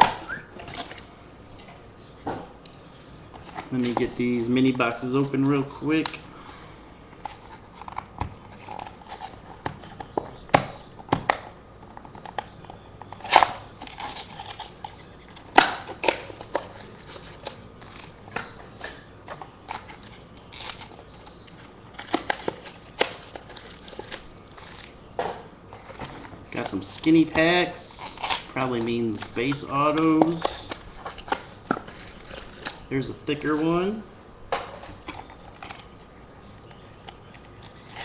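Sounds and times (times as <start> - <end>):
cards rustling: 2.7 - 25.0, 25.6 - 38.0
cardboard tearing: 13.2 - 18.2, 19.7 - 21.0, 28.0 - 32.8, 37.0 - 38.0.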